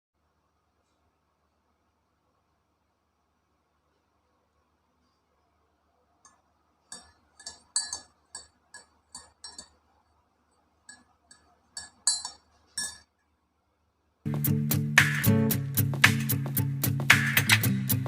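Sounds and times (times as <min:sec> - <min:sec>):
glass clinks: 0:06.9 - 0:09.8, 0:10.9 - 0:13.1.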